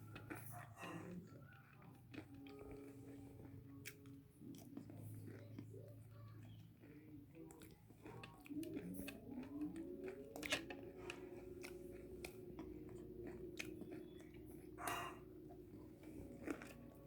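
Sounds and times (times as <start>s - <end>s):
chewing crispy fritters: 0.0s - 17.0s.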